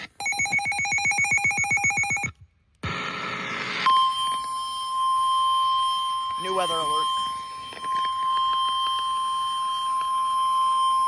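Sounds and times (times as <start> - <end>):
radio static: 0.0 - 4.4
steady alarm tone: 0.2 - 2.3, 3.9 - 11.0.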